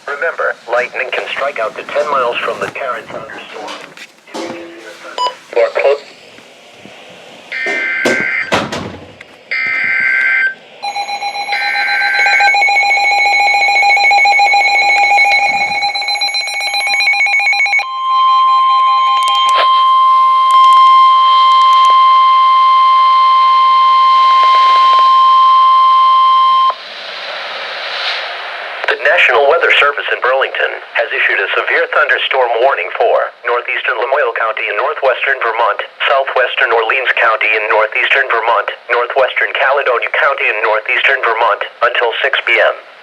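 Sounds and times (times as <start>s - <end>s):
steady warning alarm tone: 3.6s - 6.3s, 7.0s - 26.8s
warbling data bursts: 7.5s - 8.6s.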